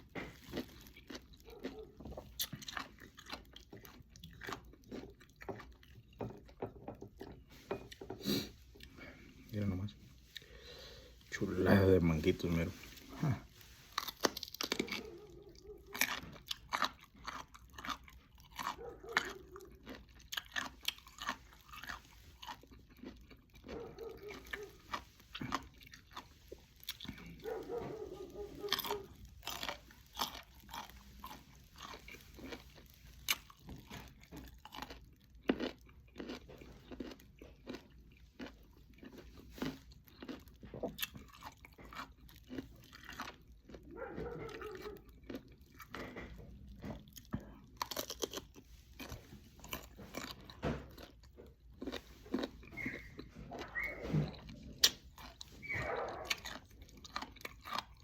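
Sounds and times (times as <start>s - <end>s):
person crunching and chewing: 0.0s - 58.0s.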